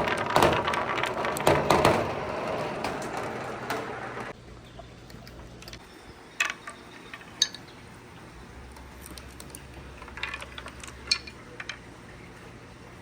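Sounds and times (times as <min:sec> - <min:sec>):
marbles clacking on wooden track: 0:00.0 - 0:04.3, 0:09.0 - 0:11.9
faint steady background noise: 0:00.0 - 0:13.0.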